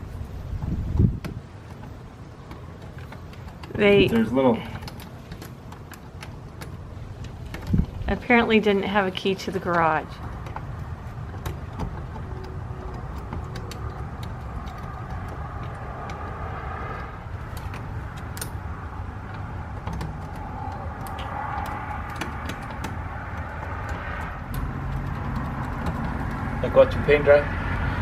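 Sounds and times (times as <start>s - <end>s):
low engine rumble: 0.0s - 28.0s
lock-picking tools clicking: 0.4s - 26.6s.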